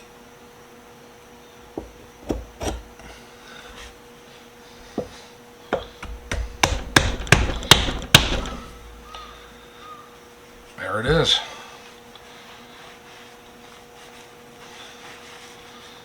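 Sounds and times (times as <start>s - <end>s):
hammer strikes on wood: 5.7s - 9.0s.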